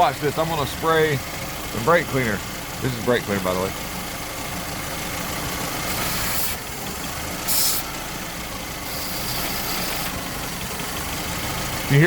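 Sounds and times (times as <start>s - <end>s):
car engine idling roughly: 0.0s - 12.0s
aerosol spray hissing: 7.5s - 7.8s, 8.9s - 10.1s.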